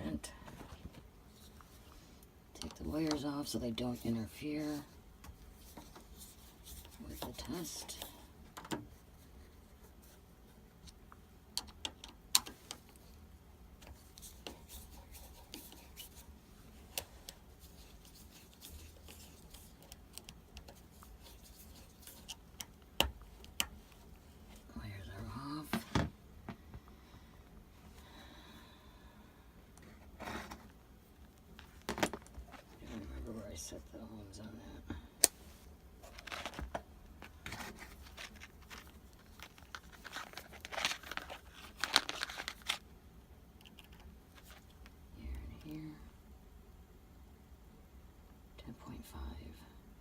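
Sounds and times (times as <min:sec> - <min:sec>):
rustling and scraping handling noise: 0:00.4 - 0:11.0, 0:12.4 - 0:26.7, 0:29.8 - 0:33.8, 0:35.3 - 0:42.9, 0:43.6 - 0:45.0.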